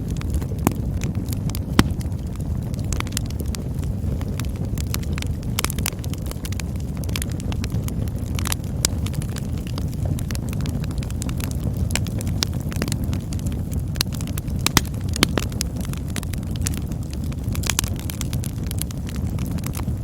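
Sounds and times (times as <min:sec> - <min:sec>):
burning wood crackling and popping: 0:00.0 - 0:20.0
campfire flames rumbling: 0:00.0 - 0:20.0.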